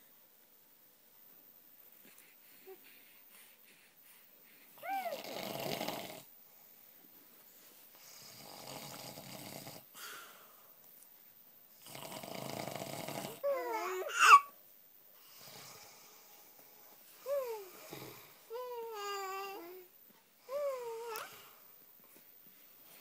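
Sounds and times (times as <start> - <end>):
infant squealing and cooing: 4.8 - 5.2, 13.4 - 14.5, 20.5 - 21.4
man snoring: 5.1 - 6.3, 8.2 - 9.9, 11.8 - 13.4.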